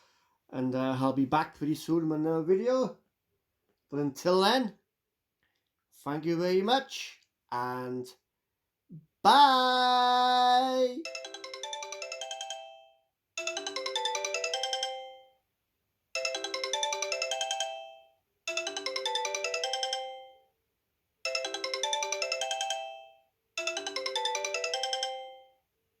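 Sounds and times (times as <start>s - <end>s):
phone ringtone melody: 10.7s - 15.4s, 16.2s - 20.5s, 21.2s - 25.6s.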